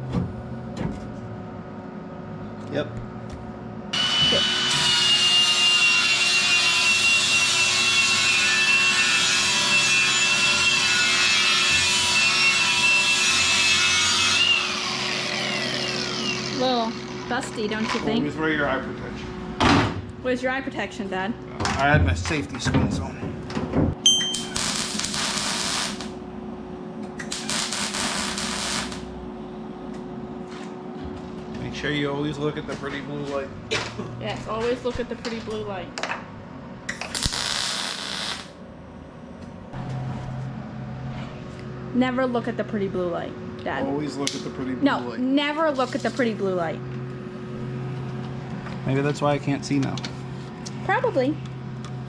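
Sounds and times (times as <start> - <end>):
power grinder grinding: 7.0 - 17.1
welding arc crackling: 24.3 - 26.2, 27.2 - 29.2, 37.0 - 38.6.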